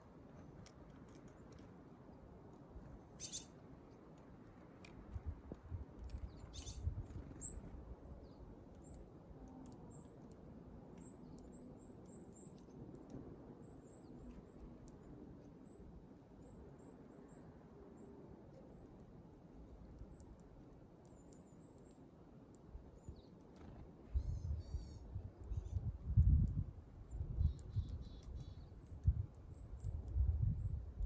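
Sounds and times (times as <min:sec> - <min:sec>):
small birds high calls: 0:02.1 - 0:03.6, 0:06.0 - 0:10.4, 0:11.0 - 0:19.1, 0:22.8 - 0:31.0.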